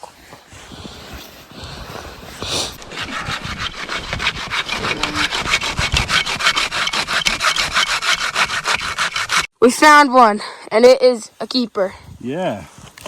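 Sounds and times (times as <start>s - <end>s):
hand saw cutting wood: 2.4s - 9.5s.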